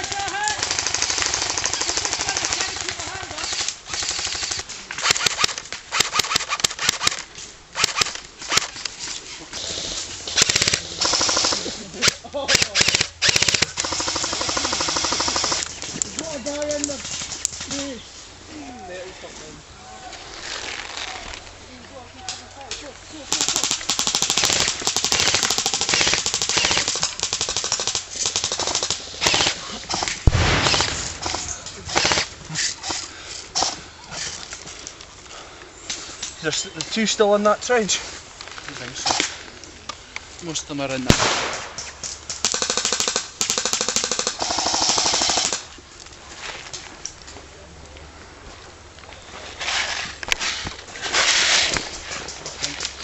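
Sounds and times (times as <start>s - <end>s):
airsoft guns firing: 0.0s - 7.2s, 7.8s - 8.8s, 10.3s - 15.7s, 23.3s - 33.0s, 41.0s - 45.7s.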